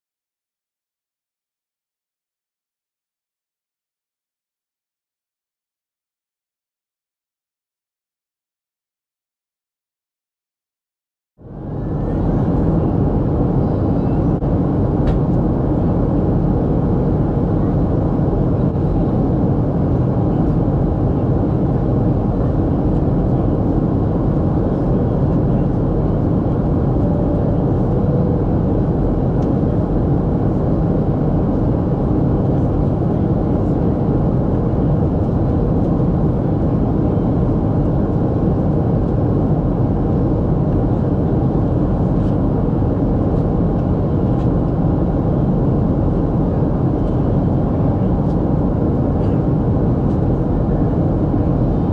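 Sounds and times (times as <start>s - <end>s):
airplane cabin engine rush: 11.4s - 51.9s.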